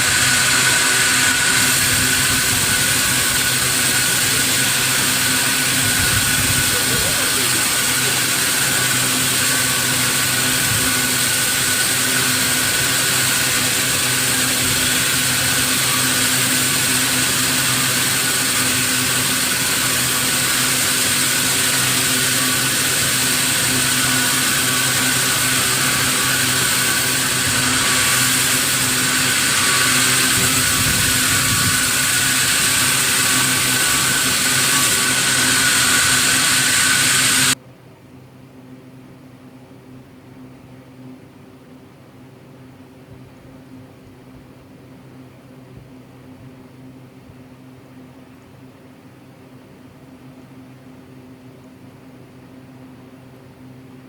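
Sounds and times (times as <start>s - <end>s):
high machine whine: 0.0s - 37.6s
sawmill machinery running: 0.0s - 37.6s.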